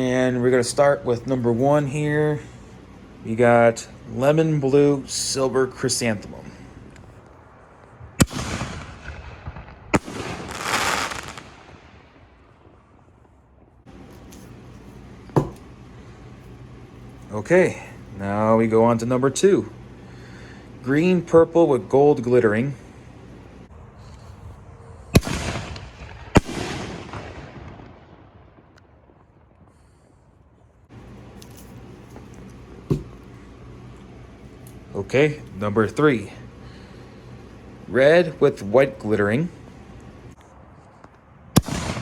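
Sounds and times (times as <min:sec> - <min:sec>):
firework rushing hiss: 0:08.1 - 0:12.2, 0:25.2 - 0:27.8
firework bangs: 0:08.1 - 0:12.3, 0:25.2 - 0:29.3, 0:41.6 - 0:42.0.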